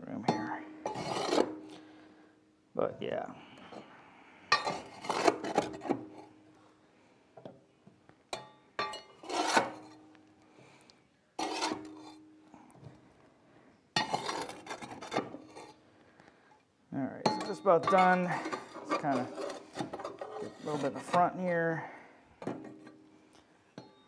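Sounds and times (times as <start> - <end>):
shovel scraping ash: 0.9 - 1.7, 4.5 - 5.9, 9.2 - 9.9, 11.4 - 12.2, 14.0 - 15.8, 18.0 - 21.1.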